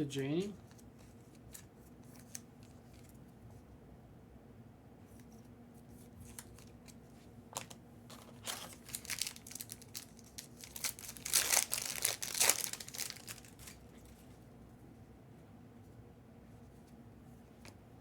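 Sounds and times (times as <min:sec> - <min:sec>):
foil wrapper crinkling and tearing: 0:06.2 - 0:07.0, 0:07.6 - 0:13.8.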